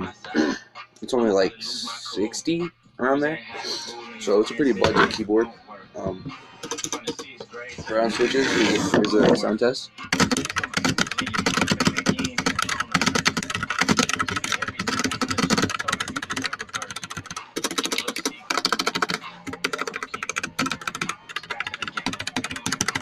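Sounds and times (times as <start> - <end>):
mechanical keyboard typing: 6.6 - 7.2, 10.1 - 23.0.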